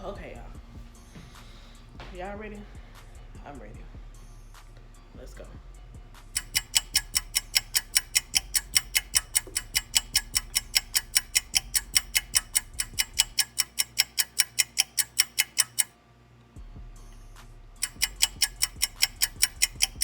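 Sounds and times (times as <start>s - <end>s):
rapid even ticking: 6.2s - 15.9s, 17.8s - 20.0s.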